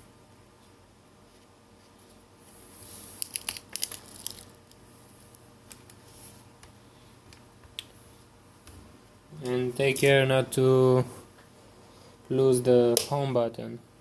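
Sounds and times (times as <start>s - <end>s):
glass crackling snaps: 3.2s - 4.8s.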